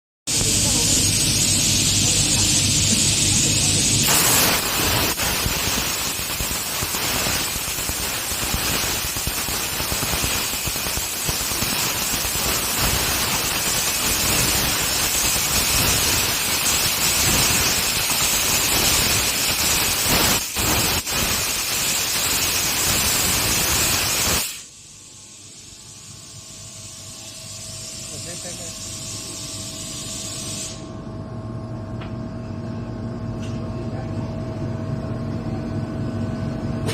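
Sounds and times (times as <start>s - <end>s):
faint machine hum: 0.3s - 17.8s, 24.6s - 36.9s
laser cutter air jet hissing: 0.3s - 31.0s.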